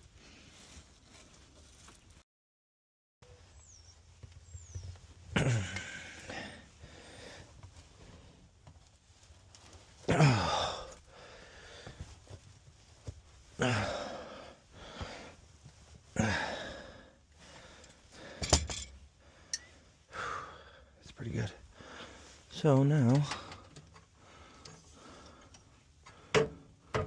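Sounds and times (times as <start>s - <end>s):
person sighing: 5.4s - 7.3s, 10.1s - 11.3s, 13.6s - 15.0s, 16.2s - 17.1s.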